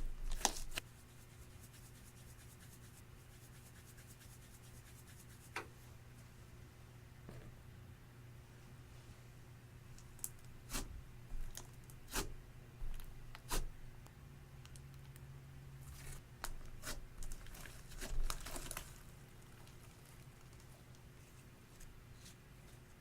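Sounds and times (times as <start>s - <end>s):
crackly slime stretch: 15.9s - 21.0s.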